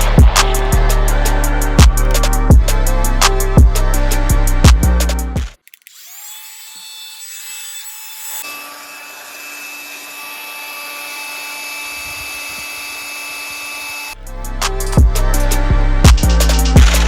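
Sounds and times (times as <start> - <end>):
vacuum cleaner motor whine and hum: 6.0 - 14.2.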